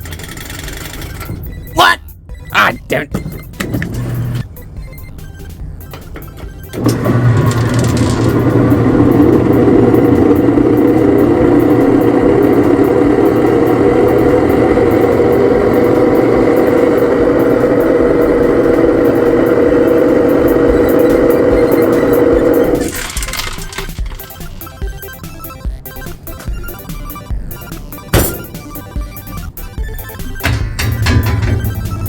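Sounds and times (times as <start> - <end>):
loud motor droning: 6.7 - 23.8, 27.6 - 32.0.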